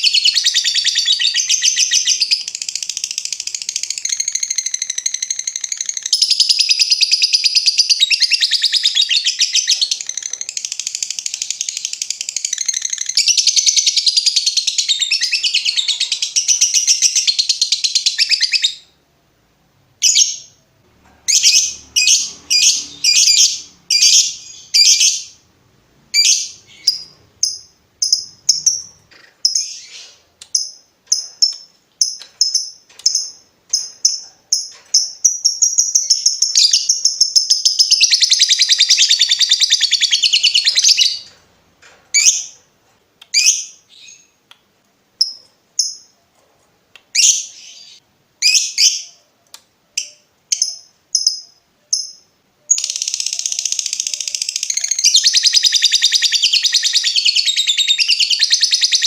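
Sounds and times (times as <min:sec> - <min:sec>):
lovebird chattering trill: 0:00.0 - 0:18.8, 0:26.2 - 0:41.3
lovebird high chirps: 0:00.0 - 0:19.0, 0:20.0 - 0:20.6, 0:21.2 - 0:25.4, 0:26.1 - 0:41.4, 0:42.1 - 0:42.6, 0:43.3 - 0:44.4, 0:47.1 - 0:49.3, 0:50.0 - 0:59.0.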